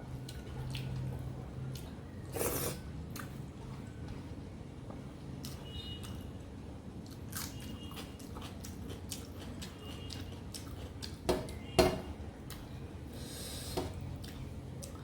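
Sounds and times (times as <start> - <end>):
chewing food: 0.2 - 4.2, 7.0 - 11.3, 14.0 - 15.0.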